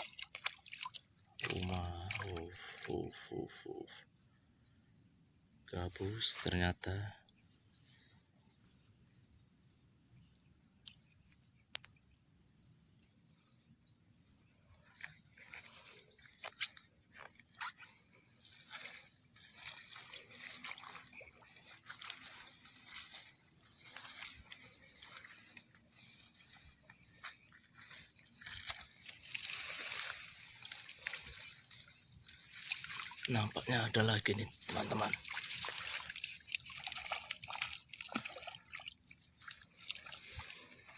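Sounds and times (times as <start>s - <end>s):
splashing in shallow water: 0.0s - 3.1s, 15.0s - 40.9s
high-pitched insect chorus: 0.0s - 40.9s.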